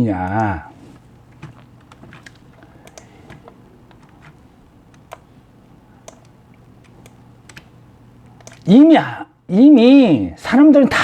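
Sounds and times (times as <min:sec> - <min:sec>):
steady low hum: 0:00.0 - 0:11.0
faint light clicks and ticks: 0:01.3 - 0:05.3, 0:06.0 - 0:08.7.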